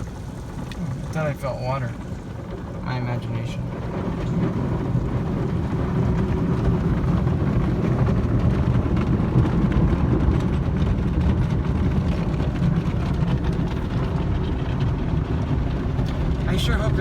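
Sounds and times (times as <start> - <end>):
water spattering: 0.0 - 8.0
car wash water spray and machinery: 0.0 - 17.0.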